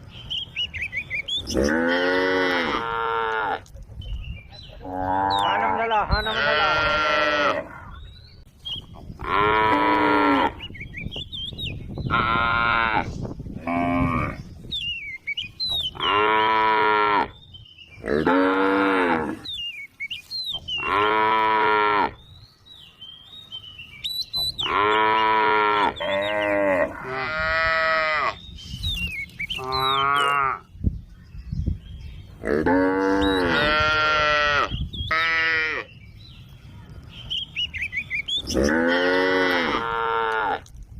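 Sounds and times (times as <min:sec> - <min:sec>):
cows mooing: 0:01.4 - 0:03.7, 0:04.8 - 0:08.0, 0:09.2 - 0:10.6, 0:16.0 - 0:17.4, 0:18.0 - 0:19.5, 0:20.8 - 0:22.2, 0:24.6 - 0:28.4, 0:29.6 - 0:30.7, 0:32.4 - 0:35.9, 0:38.4 - 0:40.7.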